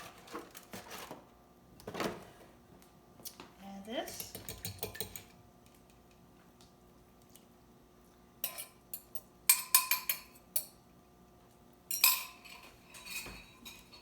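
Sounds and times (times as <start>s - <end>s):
utensil clinking against mixing bowl: 4.1s - 5.4s, 8.4s - 10.8s, 11.9s - 14.0s.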